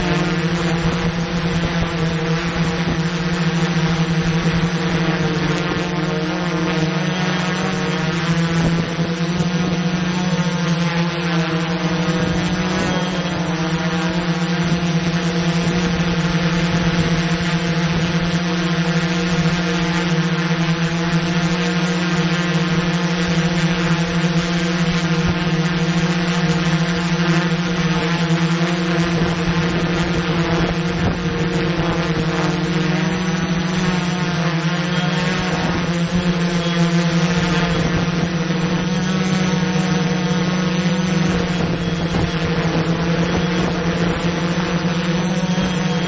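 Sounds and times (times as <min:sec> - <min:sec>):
drone propellers humming: 0:00.0 - 0:46.0.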